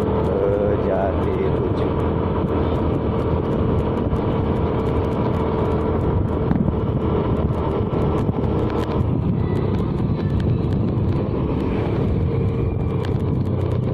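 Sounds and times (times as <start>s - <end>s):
constant low hum: 0.0s - 13.9s
vehicle engine and road rumble: 0.0s - 13.9s.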